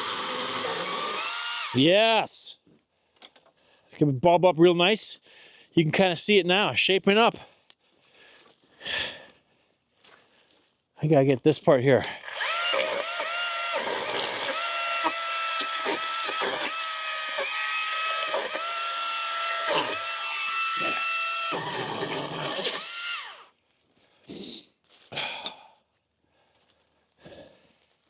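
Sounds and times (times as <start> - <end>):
electric pole saw motor whining: 0.0 - 1.8, 12.2 - 23.5.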